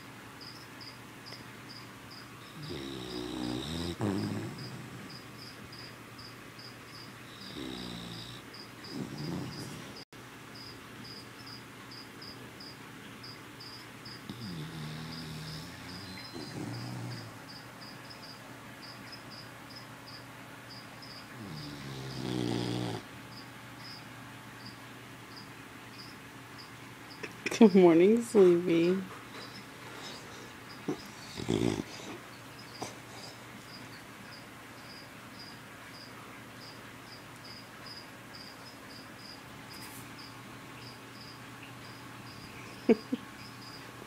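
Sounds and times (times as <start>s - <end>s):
crickets chirping: 0.0s - 10.0s, 10.6s - 44.0s
puppy snoring: 2.4s - 5.6s, 7.2s - 10.0s, 14.2s - 17.6s, 21.4s - 23.1s, 29.4s - 33.4s.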